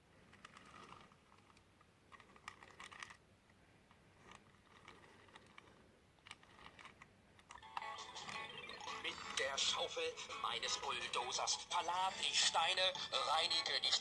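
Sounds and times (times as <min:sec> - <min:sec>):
toy plastic clicking and rattling: 0:00.3 - 0:03.2, 0:04.2 - 0:08.5.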